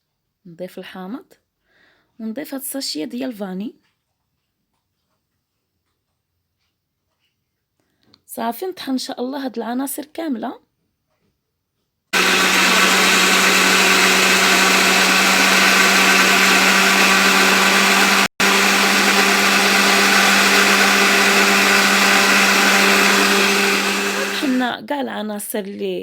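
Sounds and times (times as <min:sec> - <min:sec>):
blender running: 0:12.2 - 0:24.7.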